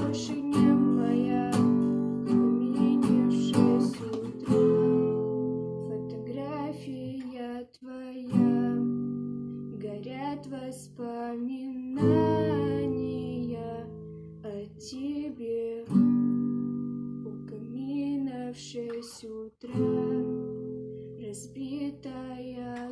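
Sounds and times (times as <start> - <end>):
acoustic guitar strumming chords: 0.0 - 5.9
woman singing: 0.0 - 22.9.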